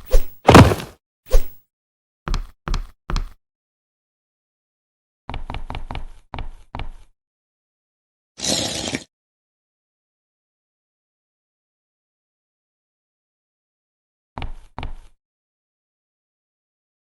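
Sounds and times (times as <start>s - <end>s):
sharp knocking impacts: 0.5s - 0.9s.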